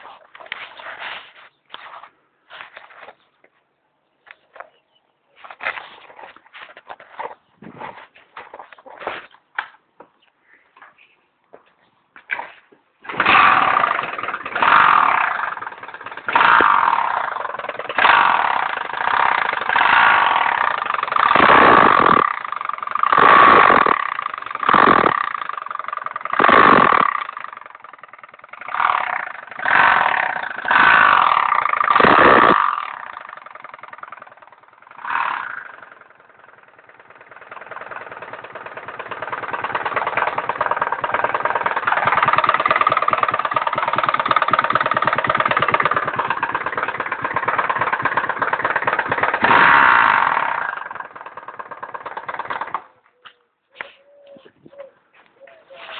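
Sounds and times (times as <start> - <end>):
moped engine revving and idling: 12.2 - 53.3.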